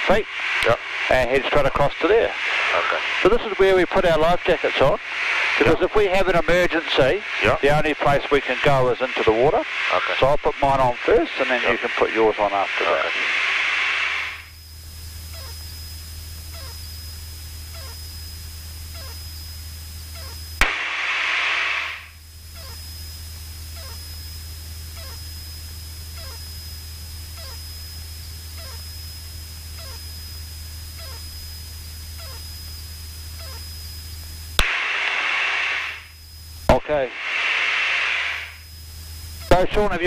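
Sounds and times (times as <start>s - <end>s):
loud burst of radio hiss: 0.0s - 15.9s, 20.2s - 23.0s, 33.4s - 40.0s
intercom low hum: 0.0s - 40.0s.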